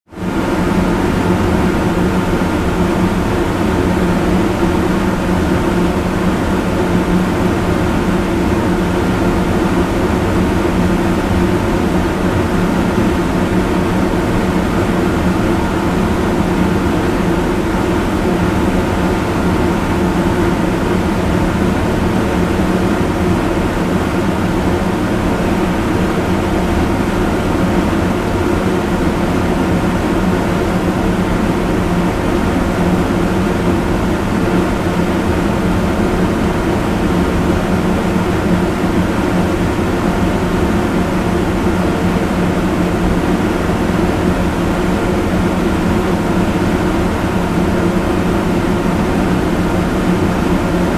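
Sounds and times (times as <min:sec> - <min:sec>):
electric fan running: 0:00.1 - 0:50.9.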